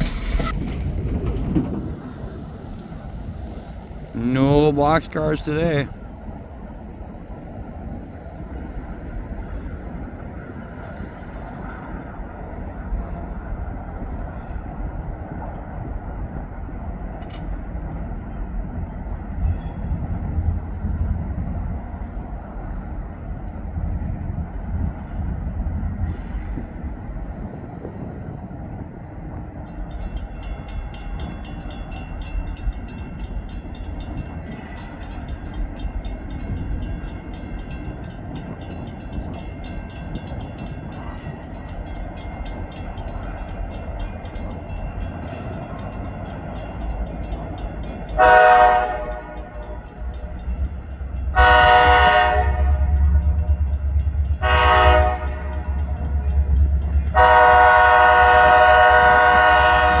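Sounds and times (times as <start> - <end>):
locomotive rumble: 0.0 - 60.0
locomotive horn blasts: 48.2 - 49.9, 51.3 - 53.2, 54.4 - 55.9, 57.1 - 60.0.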